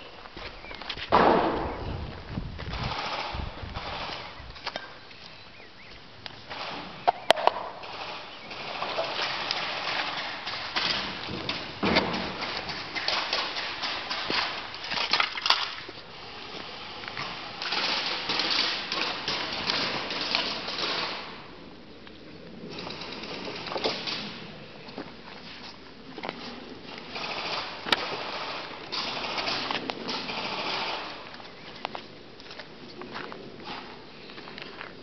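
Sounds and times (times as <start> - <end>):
sharp clicks and knocks: 6.2 - 15.8
clatter and rustling: 7.8 - 21.3, 22.6 - 35.0.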